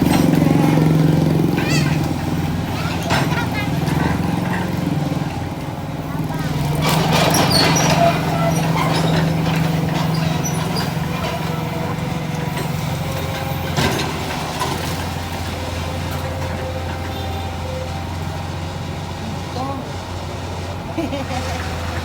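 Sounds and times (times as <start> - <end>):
excavator diesel engine running: 0.0 - 22.0.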